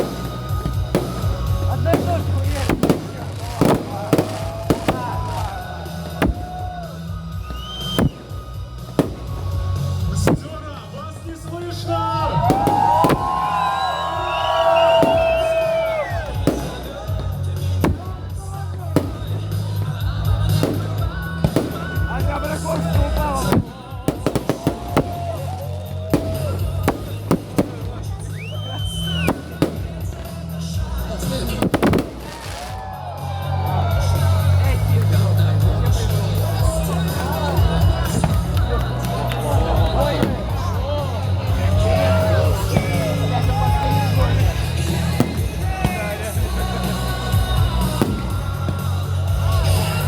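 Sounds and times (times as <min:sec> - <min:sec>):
high firework whistle: 0:00.0 - 0:09.8, 0:12.1 - 0:16.9, 0:24.3 - 0:30.0, 0:31.7 - 0:32.9
fireworks bangs: 0:00.0 - 0:50.0
music playing: 0:00.0 - 0:50.0.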